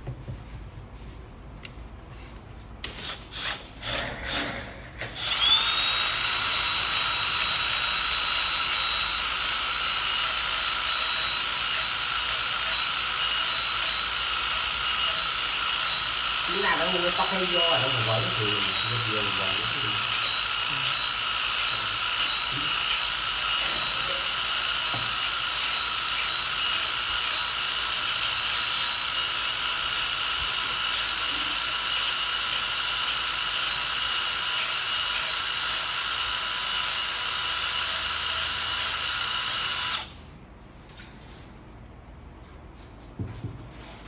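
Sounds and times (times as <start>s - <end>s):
belt sander motor whining: 5.1s - 40.1s.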